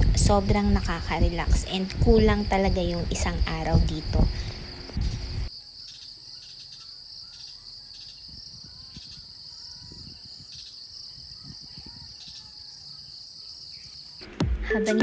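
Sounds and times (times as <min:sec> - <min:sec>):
crickets trilling: 0:00.0 - 0:14.3.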